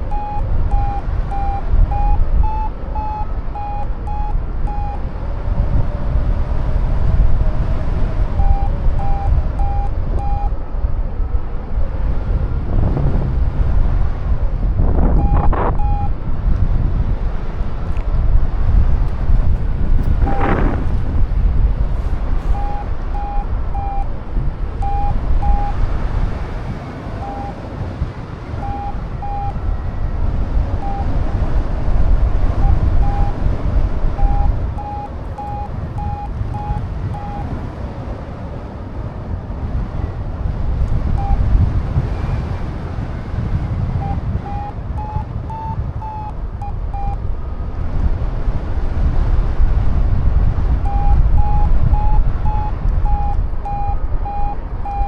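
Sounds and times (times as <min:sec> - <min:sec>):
variometer beeping: 0:00.0 - 0:05.7, 0:08.0 - 0:11.0, 0:15.0 - 0:16.6, 0:18.0 - 0:38.1, 0:39.7 - 0:42.8, 0:43.4 - 0:47.3, 0:50.8 - 0:55.0
wind buffeting microphone: 0:00.0 - 0:55.0.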